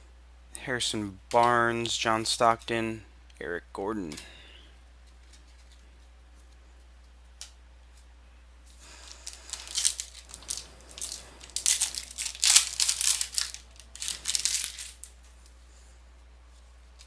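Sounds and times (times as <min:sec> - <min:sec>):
plastic wrapper crinkling: 0:08.8 - 0:15.3.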